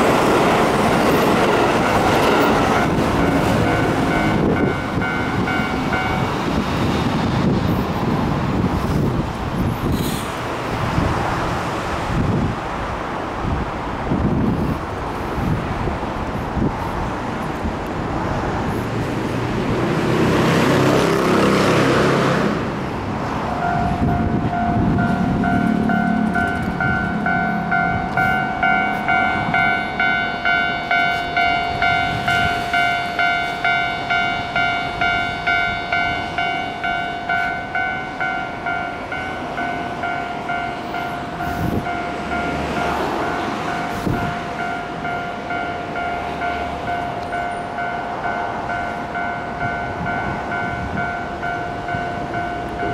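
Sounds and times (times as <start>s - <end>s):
level crossing warning bell: 0.0s - 6.9s, 23.5s - 52.9s
vehicle rushing past: 18.1s - 29.9s.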